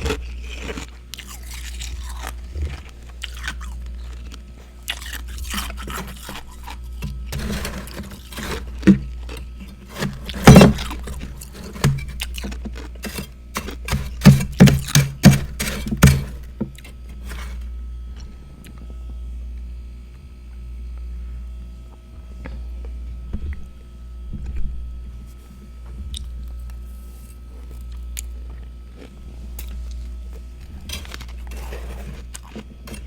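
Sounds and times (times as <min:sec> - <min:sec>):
frost being chewed: 0:00.0 - 0:19.2, 0:25.8 - 0:33.0
low steady hum: 0:00.0 - 0:33.0.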